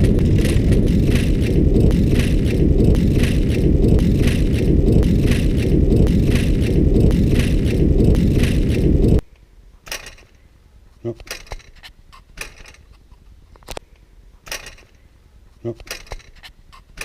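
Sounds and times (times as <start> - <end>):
bicycle rattling: 0.0 - 9.2
heavy wind: 0.0 - 9.2
road rumble: 0.0 - 9.2.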